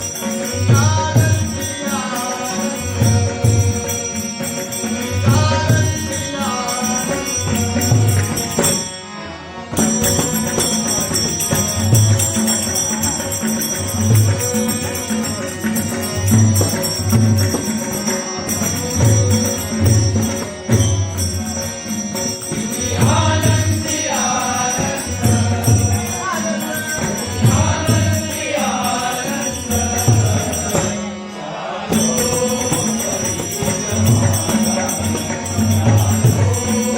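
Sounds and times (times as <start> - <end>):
person singing devotional melody: 0.0 - 36.9
hand drum beat: 9.8 - 21.0.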